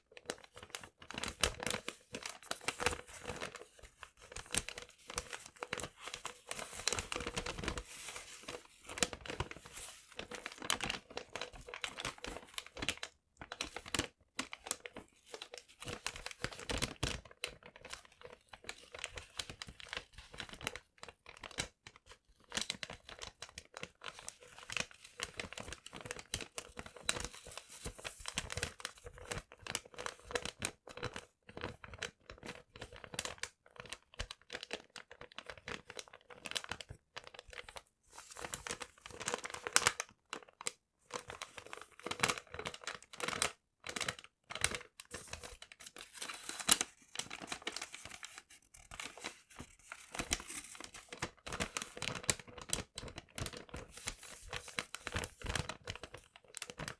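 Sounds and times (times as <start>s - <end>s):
paper being crumpled: 0.2s - 16.8s, 38.1s - 40.0s, 41.2s - 56.9s.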